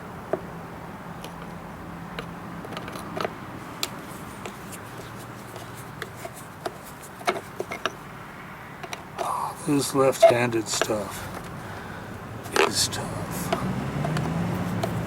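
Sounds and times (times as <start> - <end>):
light clicks and taps: 13.4 - 15.0.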